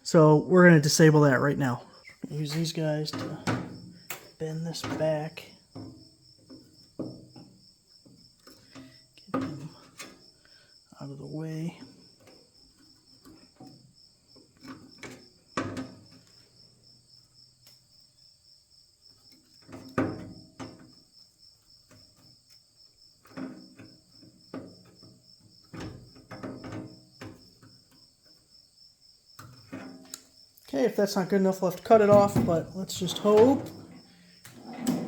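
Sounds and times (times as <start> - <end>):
crickets chirping: 0.0 - 35.0
hand tool on sheet metal: 31.8 - 35.0.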